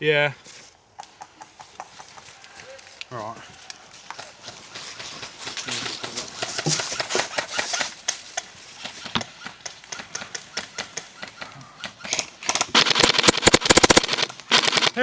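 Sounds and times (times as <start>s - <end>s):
airsoft guns firing: 12.5s - 15.0s
rustling: 12.7s - 15.0s.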